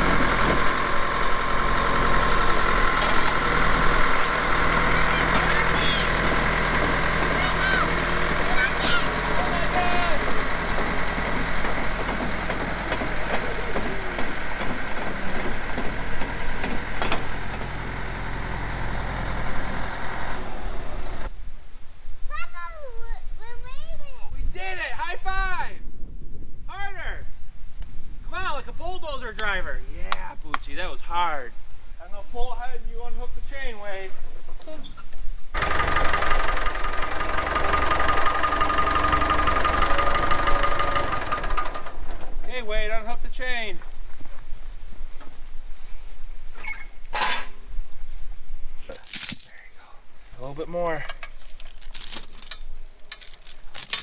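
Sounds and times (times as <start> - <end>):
tractor engine running: 0.0 - 21.3, 35.6 - 42.5
short knocks: 10.2 - 18.0.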